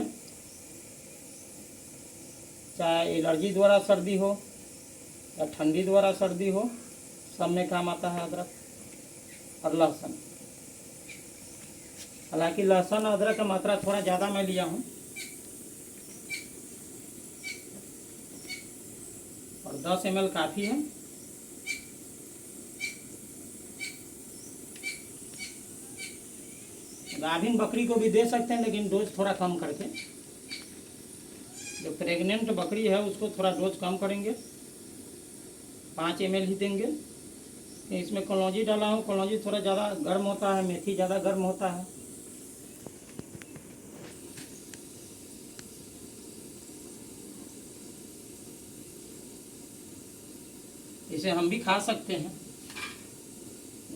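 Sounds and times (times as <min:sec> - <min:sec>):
small bird chirping: 0:00.0 - 0:01.6, 0:08.4 - 0:09.7, 0:11.0 - 0:12.4, 0:13.1 - 0:22.0, 0:22.7 - 0:27.7, 0:29.7 - 0:31.9
pan boiling with steady hiss: 0:00.0 - 0:53.9
liquid simmering in a pot: 0:32.2 - 0:53.9.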